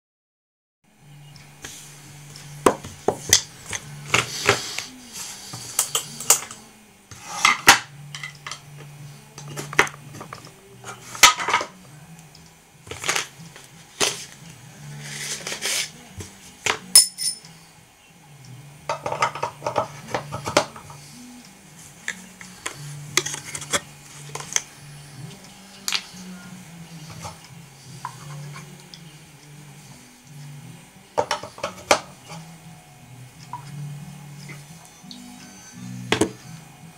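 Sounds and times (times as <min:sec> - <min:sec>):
knife scraping on ceramic rods: 0:03.1 - 0:08.6
steel clinking on ceramic: 0:16.9 - 0:17.5.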